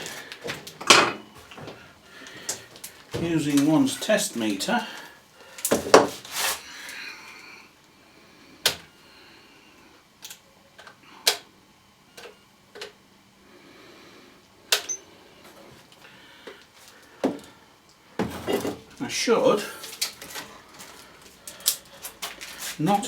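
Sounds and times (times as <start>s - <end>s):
meter probes clicking and tapping: 14.7s - 15.0s.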